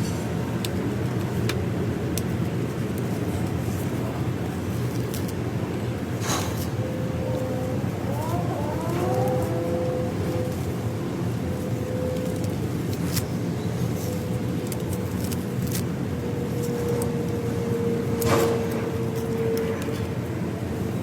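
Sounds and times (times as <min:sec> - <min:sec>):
vacuum cleaner motor whining: 0:06.7 - 0:15.4.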